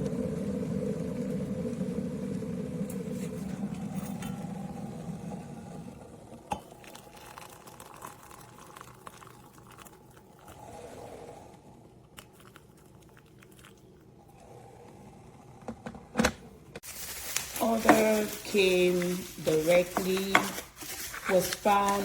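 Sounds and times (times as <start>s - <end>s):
low hum: 0.0s - 7.0s
soft crinkling: 16.8s - 22.0s.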